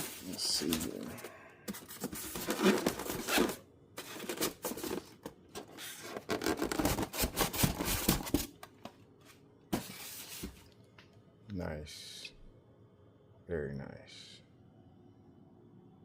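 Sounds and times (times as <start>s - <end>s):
cardboard scraping and rustling: 0.0s - 8.9s, 9.7s - 10.6s.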